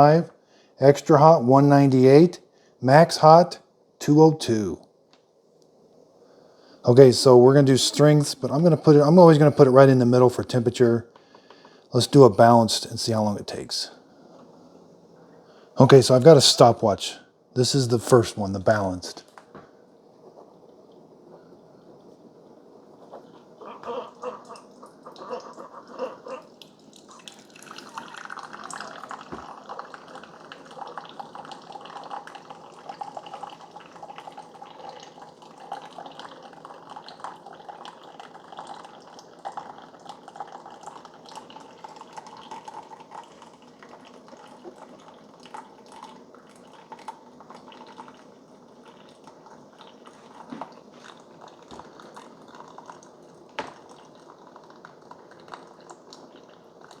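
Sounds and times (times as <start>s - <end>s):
coffee maker brewing: 6.9s - 14.5s, 20.3s - 57.0s
coffee dripping into cup: 21.9s - 57.0s.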